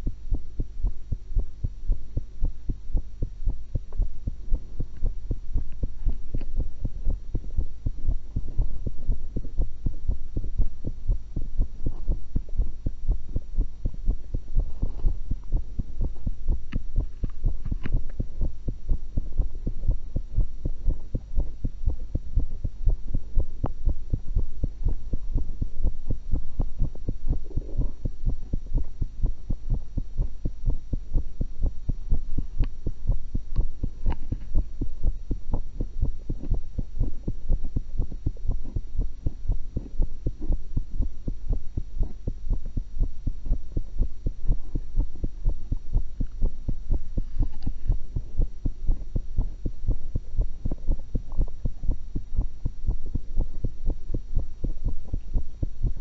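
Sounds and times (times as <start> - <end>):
constant low hum: 0.0 - 56.0
heartbeat through stethoscope: 0.0 - 56.0.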